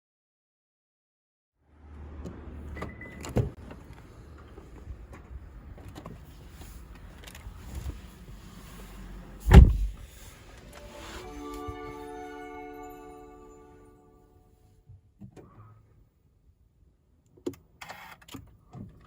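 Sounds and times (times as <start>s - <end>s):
heavy thud: 9.5s - 10.0s
electronic chime tones: 10.8s - 14.6s.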